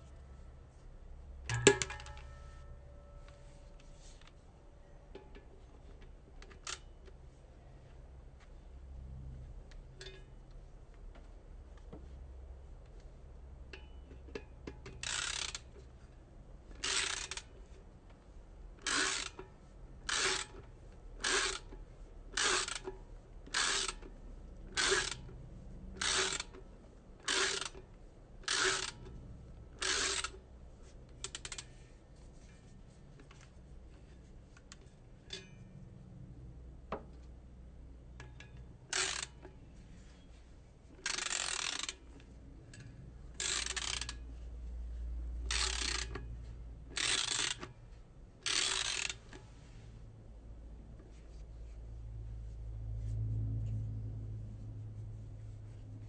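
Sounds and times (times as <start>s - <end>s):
hand ratchet ratcheting: 1.5s - 3.4s, 13.8s - 15.9s, 16.7s - 17.8s, 18.8s - 21.8s, 22.4s - 25.4s, 26.0s - 29.2s, 29.8s - 30.5s, 31.1s - 31.8s, 38.2s - 39.6s, 41.0s - 44.3s, 45.4s - 46.3s, 46.9s - 47.8s, 48.4s - 49.5s.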